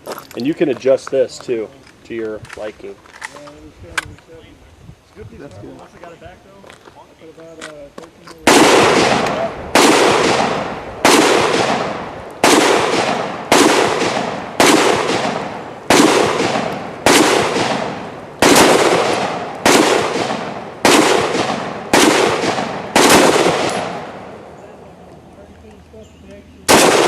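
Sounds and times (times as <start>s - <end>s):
gunshots with echo: 8.5s - 24.4s, 26.7s - 27.0s.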